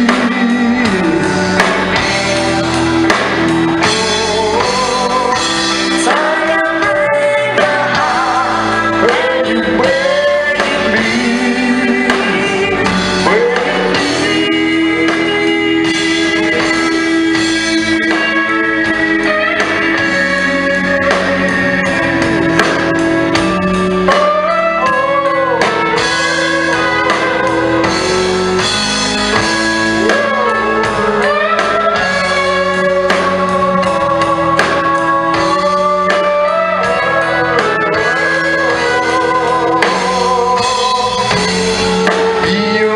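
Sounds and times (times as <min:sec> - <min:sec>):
song with singing and instruments: 0:00.0 - 0:42.9.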